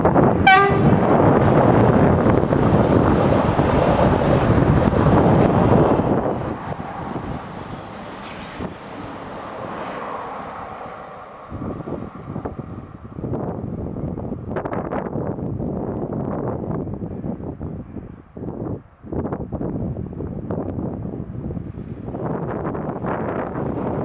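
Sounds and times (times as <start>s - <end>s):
train passing: 0.0s - 14.1s
wind on microphone: 0.0s - 24.0s
short high tone: 0.5s - 1.0s.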